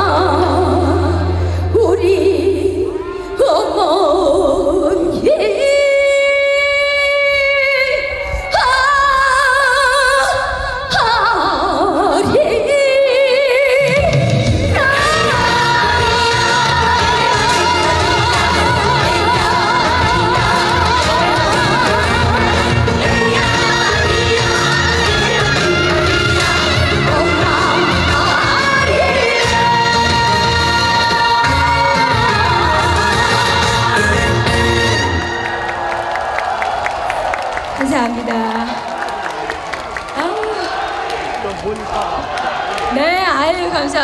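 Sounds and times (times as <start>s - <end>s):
woman singing with vibrato: 0.0s - 35.6s
band with drums and bass: 13.8s - 35.1s.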